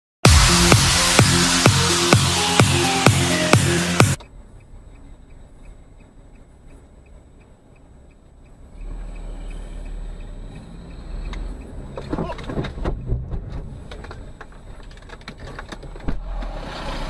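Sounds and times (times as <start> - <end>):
sharp knocks and bangs: 0.2 - 4.2
car road and engine rumble: 0.2 - 17.0.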